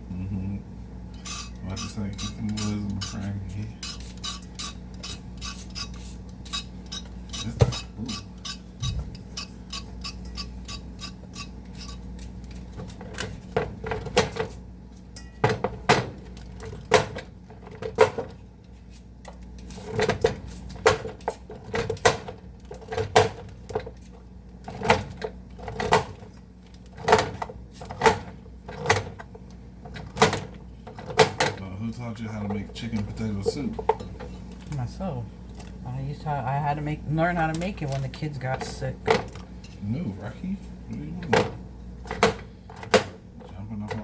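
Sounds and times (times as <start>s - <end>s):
vegetable peeler scraping carrots: 1.2s - 12.4s.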